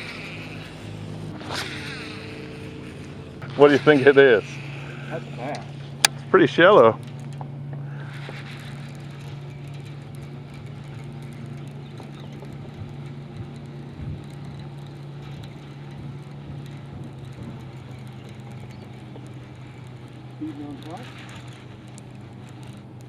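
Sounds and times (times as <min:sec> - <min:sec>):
boat motor humming: 0:00.0 - 0:23.0
faint ticks: 0:07.0 - 0:23.0.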